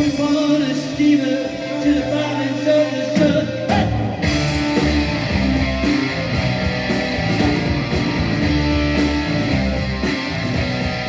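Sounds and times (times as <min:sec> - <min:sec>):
person singing: 0:00.0 - 0:04.8
bass and drums: 0:00.0 - 0:11.0
electric guitar: 0:00.0 - 0:11.0.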